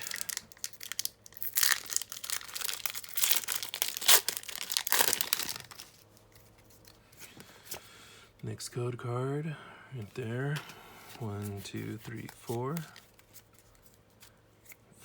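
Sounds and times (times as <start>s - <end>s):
foil wrapper tearing and crinkling: 0.0s - 6.0s.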